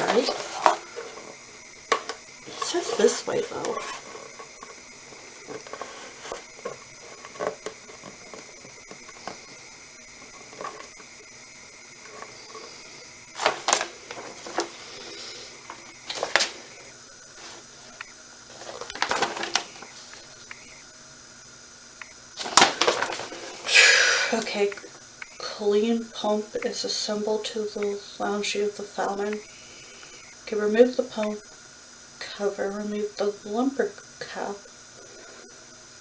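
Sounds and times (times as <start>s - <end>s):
plastic parts clattering knocks: 0.0s - 9.5s, 10.2s - 11.0s, 12.0s - 20.2s, 22.4s - 23.7s
plastic parts clicking: 0.0s - 9.6s, 10.2s - 11.1s, 12.0s - 20.6s, 22.4s - 23.7s.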